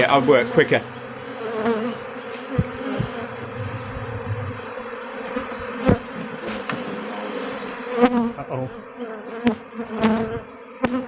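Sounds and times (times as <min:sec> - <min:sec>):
bee swarm buzzing: 0:00.0 - 0:11.0
short low knocks: 0:02.5 - 0:04.6.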